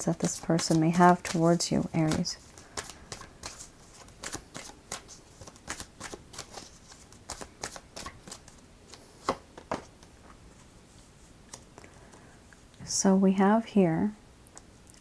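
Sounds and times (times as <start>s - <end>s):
cards being shuffled by hand: 0.0s - 10.0s.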